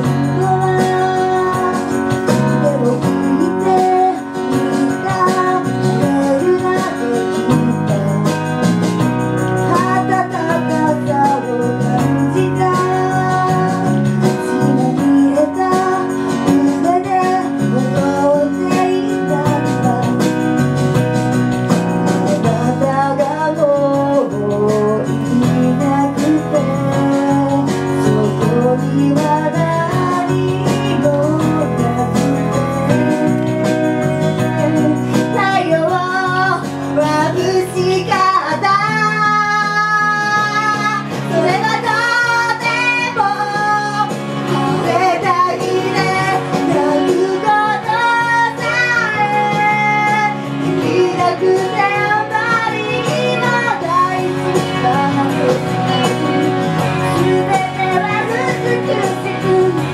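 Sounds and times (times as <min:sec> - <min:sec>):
loud pop accompaniment: 0:00.0 - 0:59.9
female group singing: 0:38.5 - 0:59.9.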